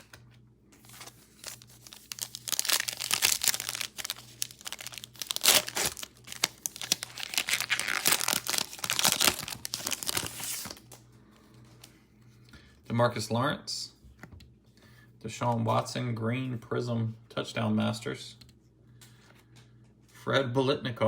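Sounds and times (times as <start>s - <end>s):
foil wrapper tearing and crinkling: 0.8s - 10.9s.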